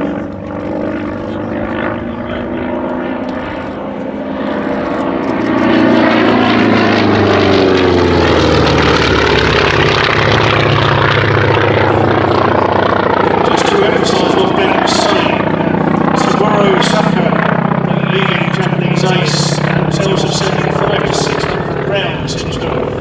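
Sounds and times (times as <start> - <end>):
propeller aircraft flying past: 0.0 - 23.0.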